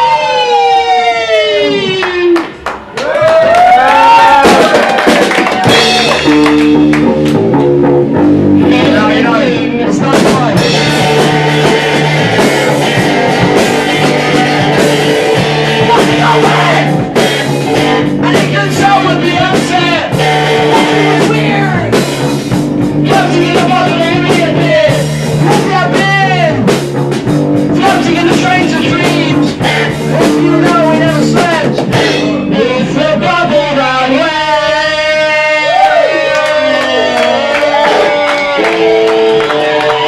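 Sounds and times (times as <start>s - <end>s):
live rock band playing: 1.5s - 2.6s, 4.4s - 35.4s, 36.6s - 40.0s
person singing: 15.6s - 22.0s, 23.0s - 26.6s, 27.8s - 40.0s.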